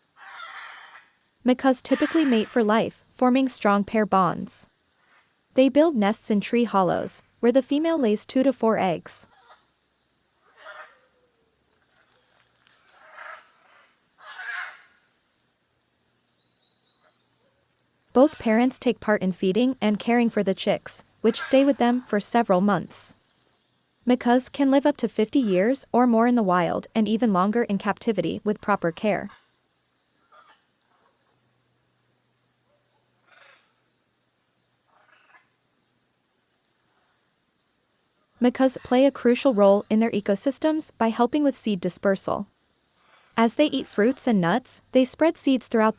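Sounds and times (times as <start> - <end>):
macaws squawking: 0.2 - 1.0, 1.7 - 2.9, 10.5 - 11.0, 11.9 - 14.9, 18.3 - 23.1
bird chirps and calls: 26.3 - 29.3.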